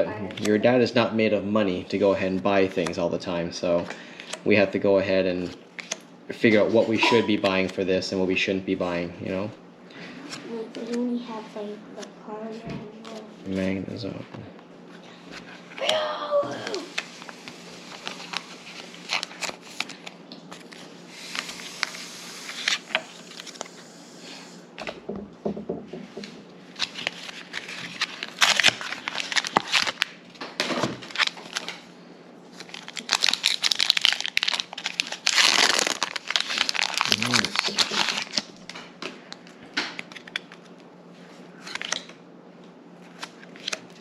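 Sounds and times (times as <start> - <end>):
foil wrappers tearing and crinkling: 17.9 - 23.7, 26.7 - 30.1, 31.0 - 31.8, 32.5 - 38.6.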